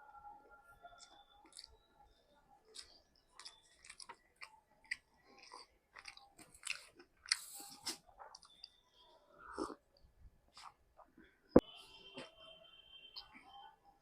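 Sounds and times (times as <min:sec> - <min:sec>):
chewing and crunching food: 0:00.7 - 0:08.8.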